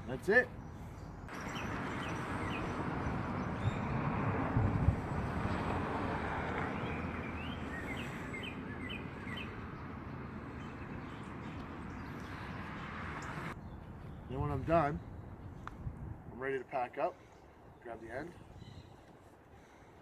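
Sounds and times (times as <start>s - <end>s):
outdoor background noise: 0.0s - 20.0s.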